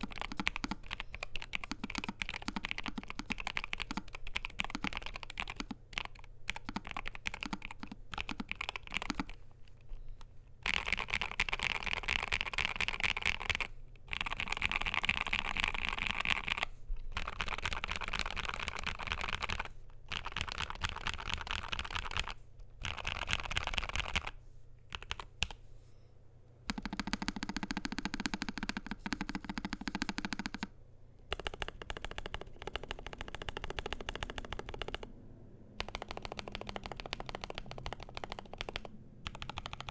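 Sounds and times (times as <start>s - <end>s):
mechanical keyboard typing: 0.0s - 9.4s, 10.6s - 25.6s, 26.7s - 30.7s, 31.3s - 35.1s, 35.8s - 39.9s.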